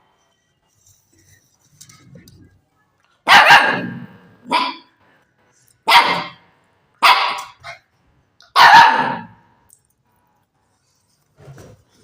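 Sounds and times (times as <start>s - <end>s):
puppy barking: 3.2s - 4.9s, 5.9s - 6.4s, 7.0s - 7.8s, 8.5s - 9.4s
puppy yapping: 8.5s - 9.4s.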